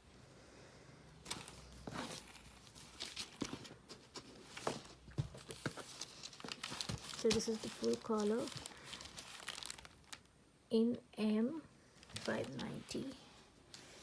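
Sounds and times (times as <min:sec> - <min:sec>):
garment and packaging rustling: 0:01.2 - 0:10.3, 0:12.0 - 0:14.0.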